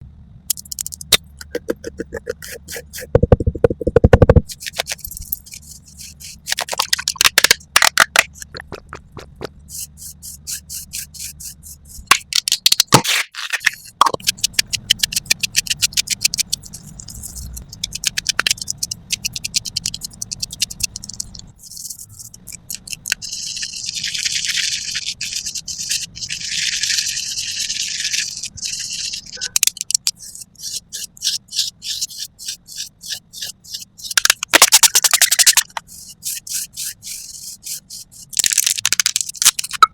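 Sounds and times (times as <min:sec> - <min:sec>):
tapping and clicking makeup tools: 0:00.5 - 0:13.0, 0:13.8 - 0:23.3, 0:29.4 - 0:39.9
steady high hissing: 0:09.6 - 0:12.1, 0:14.6 - 0:34.2, 0:35.4 - 0:38.4.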